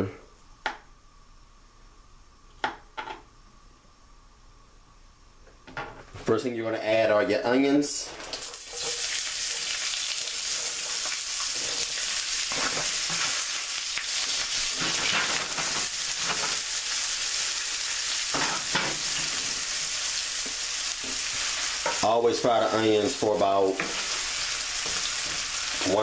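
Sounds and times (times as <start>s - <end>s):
onions sizzling in a frying pan: 8.1s - 26.0s.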